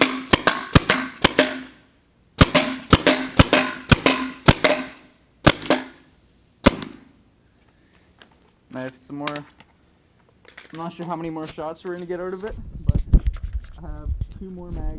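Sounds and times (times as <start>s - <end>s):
paintball pistols firing: 0.0s - 1.8s, 2.4s - 7.1s.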